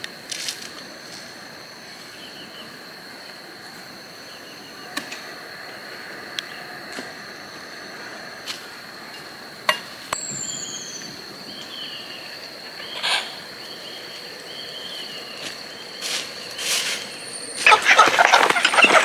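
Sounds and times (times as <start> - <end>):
insect trill: 0.0 - 19.0
bird calls and chirps: 10.1 - 19.0.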